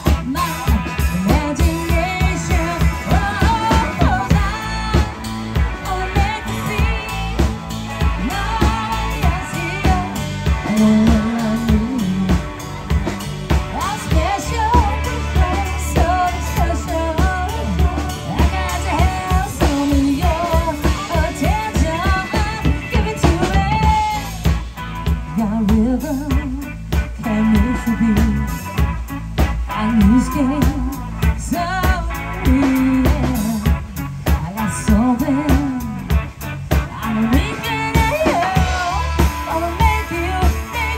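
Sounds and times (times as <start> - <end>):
band with drums and bass: 0.0 - 40.9
woman singing pop song: 0.0 - 40.9.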